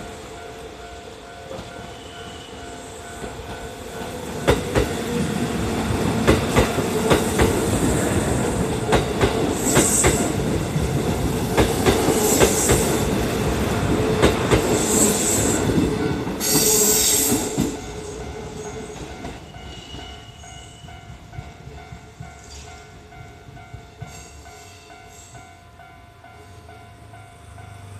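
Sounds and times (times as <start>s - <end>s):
train rumble: 0.0s - 20.1s
train wheels clicking over rail joints: 3.2s - 20.1s.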